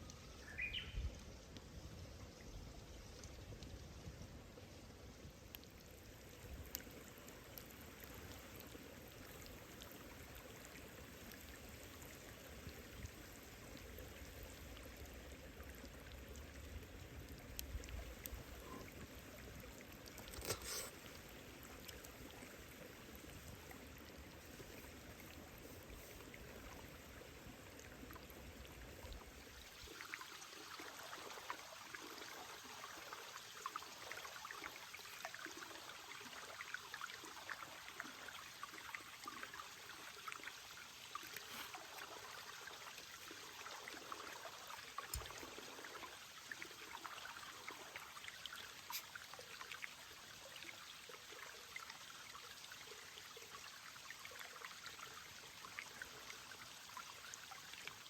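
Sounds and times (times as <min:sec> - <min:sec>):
dense patter of raindrops: 0:02.8 - 0:40.5.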